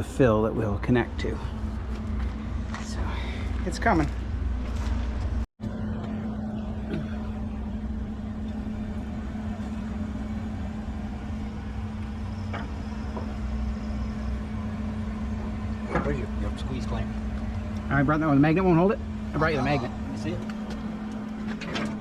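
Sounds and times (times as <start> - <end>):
low mechanical drone: 0.0 - 22.0.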